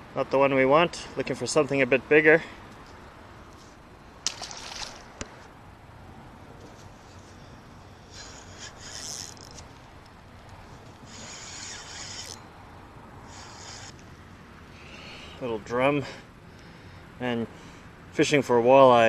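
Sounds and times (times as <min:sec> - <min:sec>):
fishing reel whirring: 0:08.0 - 0:09.6, 0:11.0 - 0:12.4, 0:13.2 - 0:14.0.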